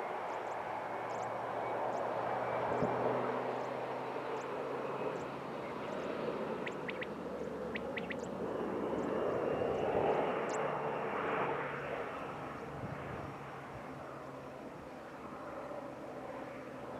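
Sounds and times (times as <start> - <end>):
turboprop aircraft engine drone: 0.0 - 16.9.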